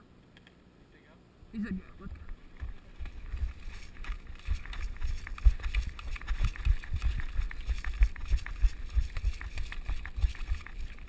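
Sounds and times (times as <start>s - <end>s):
running footsteps thudding: 2.6s - 11.0s.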